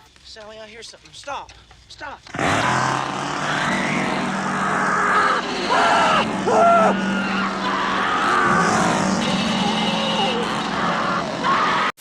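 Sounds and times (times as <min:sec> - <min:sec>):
car engine running: 0:02.4 - 0:11.6
high wavering screeches: 0:02.4 - 0:11.9.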